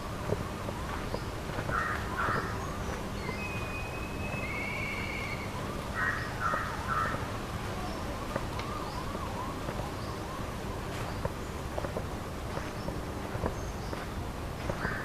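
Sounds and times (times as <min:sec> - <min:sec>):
harsh bird calls: 0:00.5 - 0:11.3.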